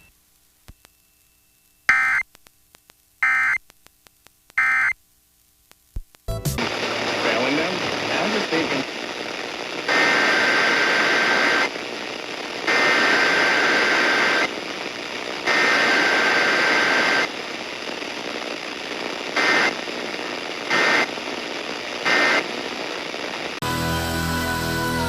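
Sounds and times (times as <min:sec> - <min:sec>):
radio hiss: 0:06.6 - 0:23.6.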